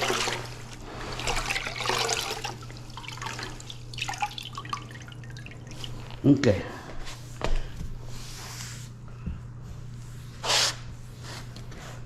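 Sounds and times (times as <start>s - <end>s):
water splashing in a bucket: 0.0s - 6.2s.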